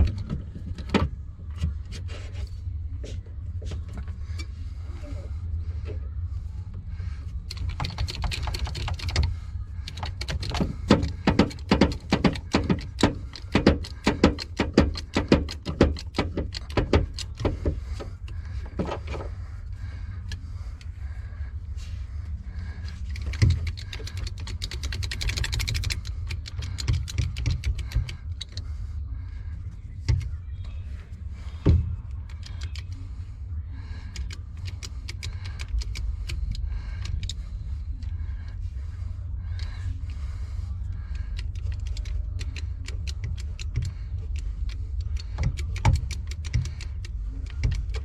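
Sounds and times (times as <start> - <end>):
steady low hum: 0.0 - 48.0
rattle of fine clicks: 7.4 - 18.6, 22.8 - 28.8, 34.0 - 38.4, 40.9 - 48.0
hand tools clicking and knocking: 7.5 - 19.2, 23.0 - 28.6, 34.1 - 37.4, 41.1 - 48.0.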